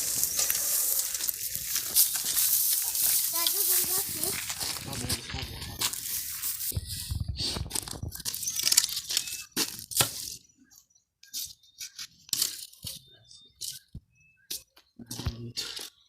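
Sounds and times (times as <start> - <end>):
dry brush rustling and crunching: 0.0 - 6.9.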